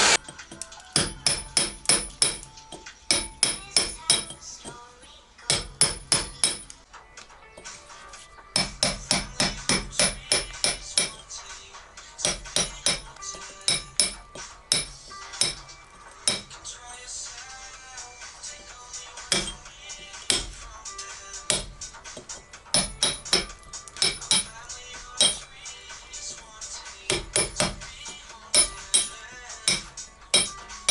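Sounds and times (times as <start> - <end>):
hammer blows with metallic ring: 0.2 - 4.4, 5.5 - 6.8, 8.6 - 11.3, 12.2 - 16.6, 19.3 - 19.7, 22.7 - 24.6, 25.2 - 25.5, 27.1 - 30.9.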